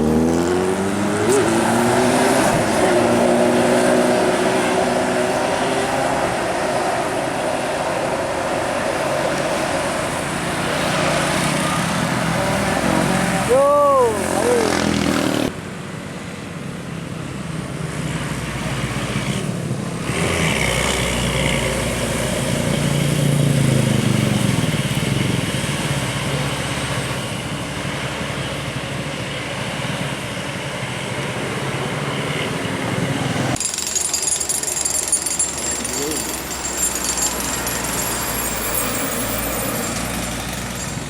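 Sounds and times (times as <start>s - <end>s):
bus diesel engine driving past: 0.0s - 33.6s.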